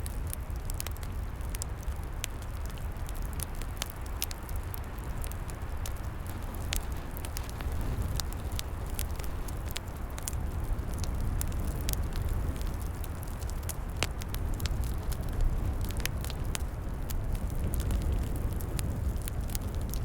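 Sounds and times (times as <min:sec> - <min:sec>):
wood fire crackling and popping: 0:00.0 - 0:20.0
steady low rumble: 0:05.0 - 0:20.0.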